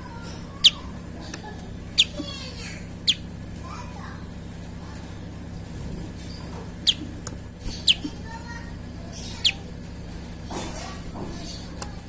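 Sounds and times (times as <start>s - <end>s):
steady low hum: 0.0s - 12.0s
bird high chirps: 0.2s - 0.9s, 1.9s - 2.4s, 3.0s - 3.3s, 6.2s - 8.2s, 9.0s - 9.7s.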